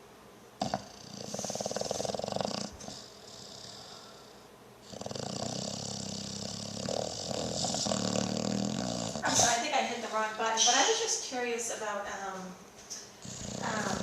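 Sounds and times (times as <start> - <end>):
dog snoring: 0.6 - 9.6, 13.1 - 14.0.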